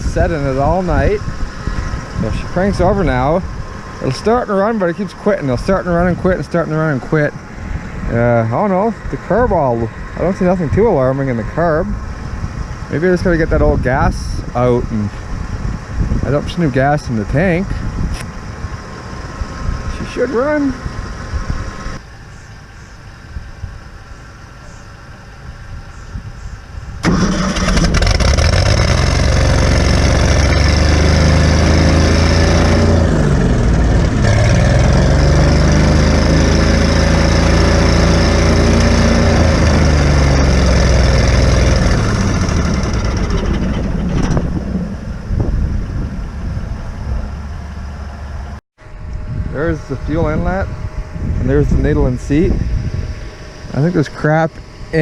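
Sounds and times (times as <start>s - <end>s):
gasoline engine running: 27.0s - 55.0s.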